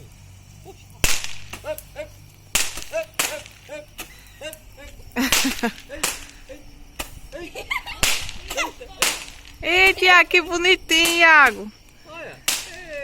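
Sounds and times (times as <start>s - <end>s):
bonfire burning: 0.0s - 13.0s
wood popping cracks: 1.0s - 7.2s, 8.0s - 9.6s, 11.0s - 13.0s.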